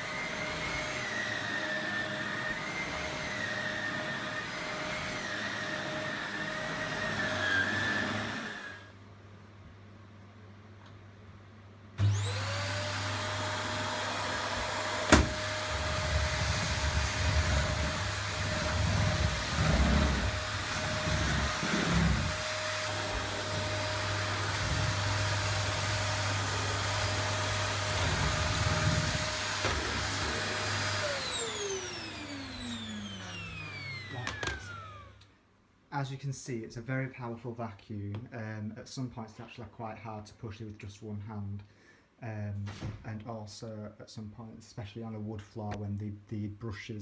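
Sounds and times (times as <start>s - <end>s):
vacuum cleaner motor whine: 0.0s - 8.9s, 12.0s - 35.3s.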